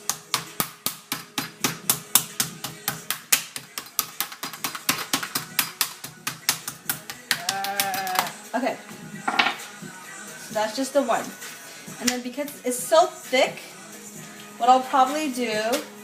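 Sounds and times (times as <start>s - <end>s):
meat mallet pounding chicken: 0.0s - 8.3s.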